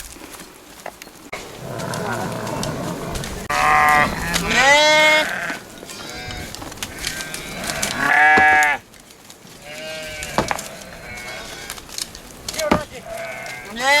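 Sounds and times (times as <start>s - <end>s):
sheep bleating: 1.5s - 8.8s, 9.6s - 11.8s, 12.9s - 14.0s.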